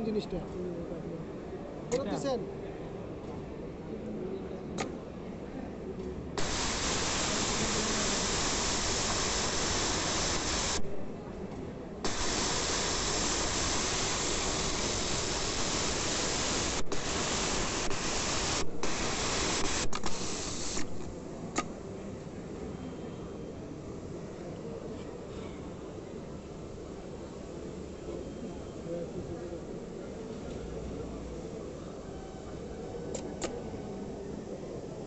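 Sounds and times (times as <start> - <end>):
industrial sewing machine whirring: 6.4 - 10.8, 12.1 - 21.1.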